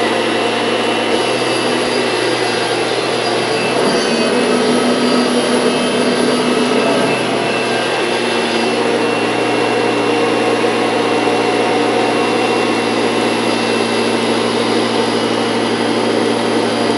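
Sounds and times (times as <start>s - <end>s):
vacuum cleaner running: 0.0s - 16.9s.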